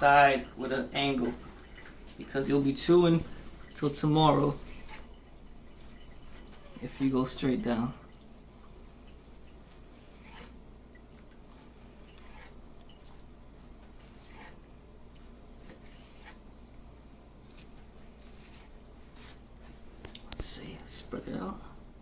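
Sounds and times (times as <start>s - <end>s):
knife cutting on a board: 9.7s - 10.6s, 11.6s - 12.6s, 13.6s - 14.6s, 15.2s - 16.4s.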